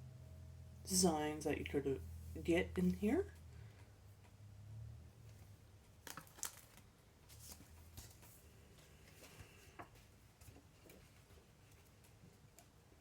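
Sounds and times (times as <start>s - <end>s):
plastic packet crinkling: 6.0s - 7.6s.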